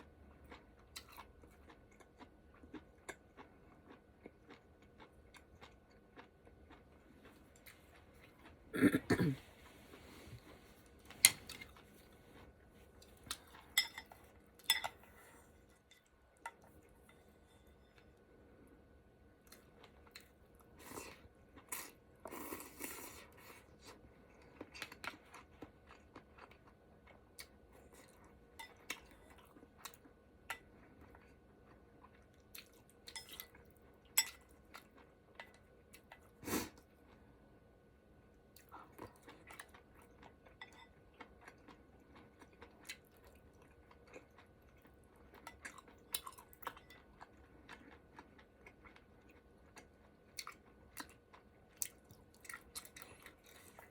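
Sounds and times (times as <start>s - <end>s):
person chewing: 0.3s - 17.1s, 19.4s - 37.2s, 38.6s - 53.9s.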